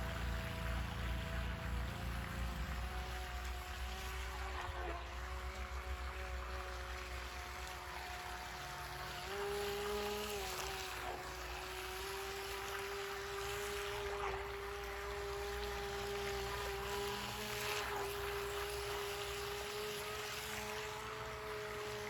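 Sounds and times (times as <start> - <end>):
electric motor whining: 0.0 - 22.0.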